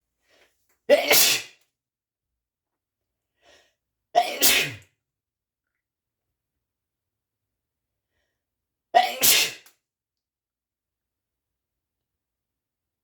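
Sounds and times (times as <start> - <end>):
man sneezing: 0.9 - 1.6, 4.2 - 4.8, 9.0 - 9.7.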